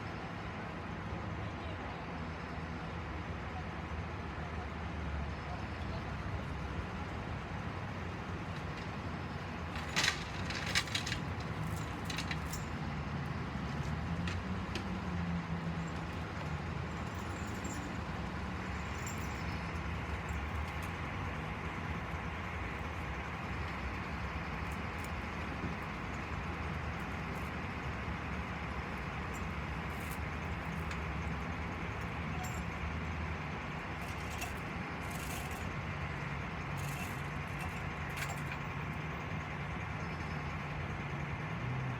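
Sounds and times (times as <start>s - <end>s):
heavy machine engine running: 6.7s - 41.8s
sharp metallic clinks: 15.8s - 21.8s, 22.9s - 32.8s, 33.7s - 35.8s, 36.7s - 39.4s.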